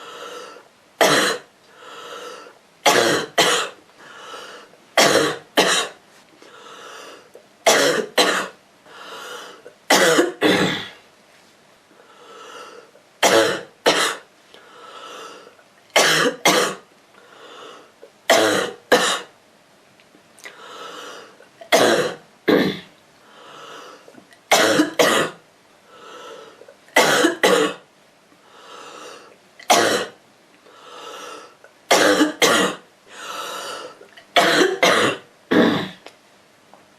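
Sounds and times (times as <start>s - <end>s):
girl coughing: 1.0s - 1.5s, 2.9s - 3.8s, 5.0s - 6.0s, 7.7s - 8.6s, 9.9s - 11.0s, 13.2s - 14.2s, 16.0s - 16.8s, 18.3s - 19.3s, 21.7s - 22.9s, 24.5s - 25.4s, 27.0s - 27.8s, 31.9s - 32.8s, 34.4s - 36.0s.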